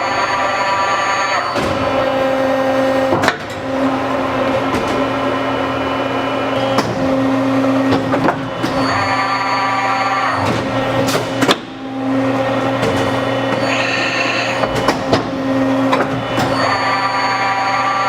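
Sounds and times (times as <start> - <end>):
machine motor whine: 0.0 - 18.0.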